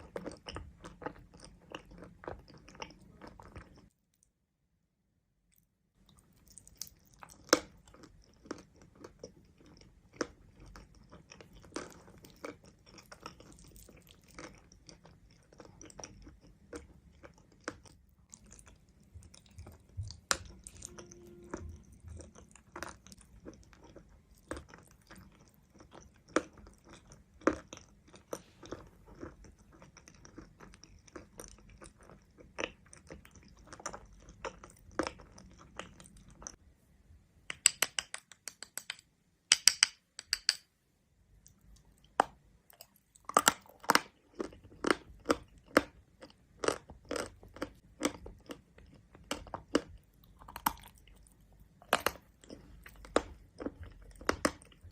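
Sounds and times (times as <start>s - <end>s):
soft chewing: 0.0s - 4.4s, 5.5s - 36.6s, 41.3s - 54.9s
chalk crunching while chewing: 41.4s - 54.9s.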